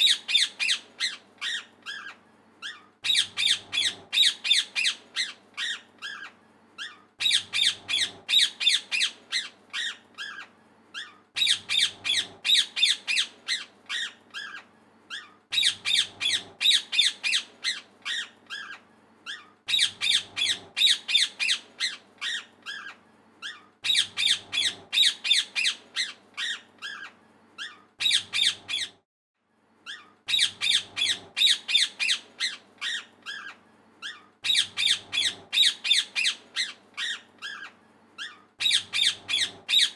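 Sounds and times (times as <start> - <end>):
parrot chirping and squawking: 0.0 - 29.0, 29.8 - 39.9.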